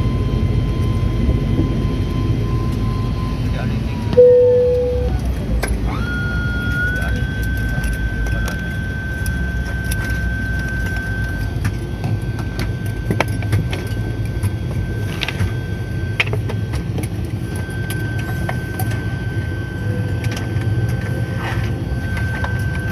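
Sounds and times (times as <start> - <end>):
aircraft engines running: 0.0 - 22.9
small clicks and rattles in cabin: 6.7 - 22.9.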